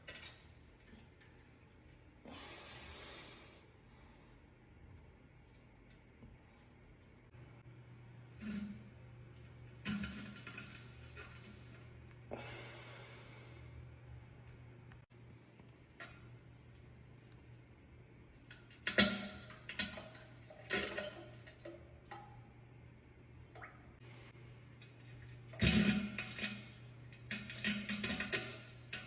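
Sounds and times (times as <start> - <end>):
steady low hum: 0.5 - 18.6.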